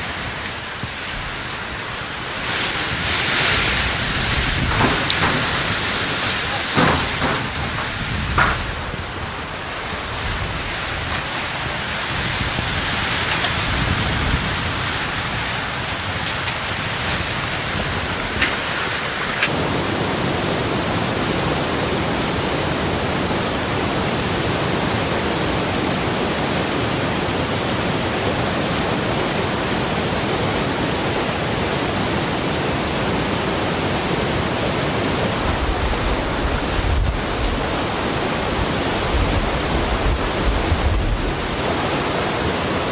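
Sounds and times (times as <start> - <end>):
heavy rain falling: 0.0 - 42.9
low thunder rumbling: 1.1 - 18.8.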